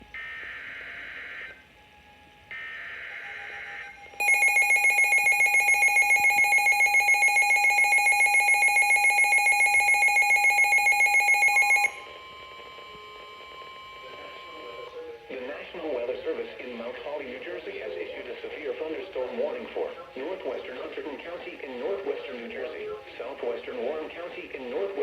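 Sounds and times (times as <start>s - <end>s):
radio alarm rapid pulses: 2.5s - 25.0s
faint steady alert tone: 3.5s - 12.8s.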